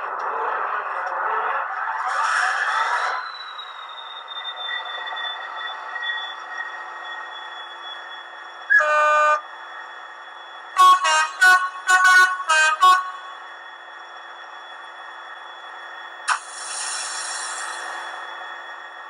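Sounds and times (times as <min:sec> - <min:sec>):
diesel engine hum: 0:08.3 - 0:19.0
diesel locomotive horn: 0:08.7 - 0:09.5, 0:10.8 - 0:13.5.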